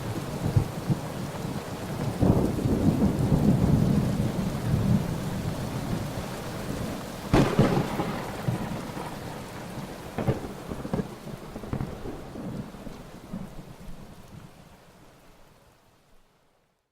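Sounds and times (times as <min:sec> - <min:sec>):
rain hissing: 0:00.0 - 0:16.4
rolling thunder: 0:02.1 - 0:06.2, 0:07.3 - 0:13.5
sharp thunderclap: 0:07.3 - 0:12.6.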